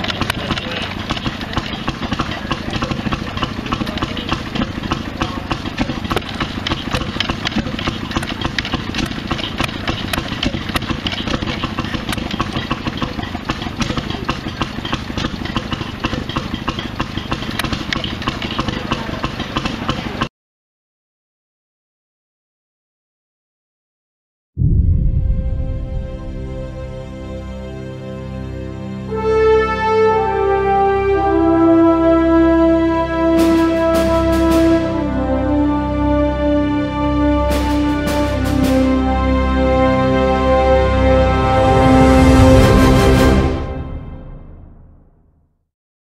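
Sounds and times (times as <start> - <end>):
fast mechanical clicks: 0.0 - 20.3
stationary gas engine running: 0.0 - 20.3, 30.1 - 44.9.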